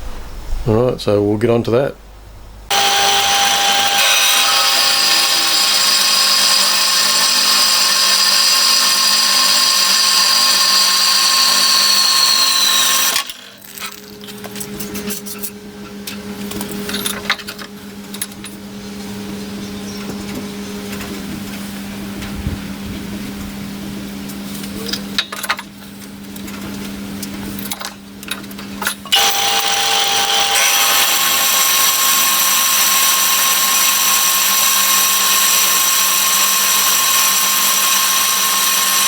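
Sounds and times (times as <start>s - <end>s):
power saw cutting steel: 2.7s - 18.5s, 29.1s - 39.0s
low machine hum: 13.6s - 25.2s.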